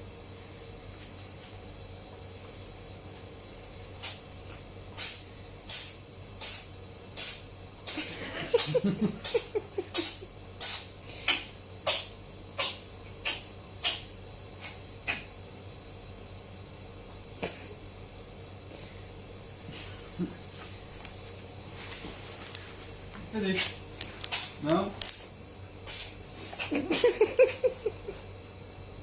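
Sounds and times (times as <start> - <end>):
cat sneezing: 5.0 - 14.0, 14.6 - 15.3, 25.9 - 26.7.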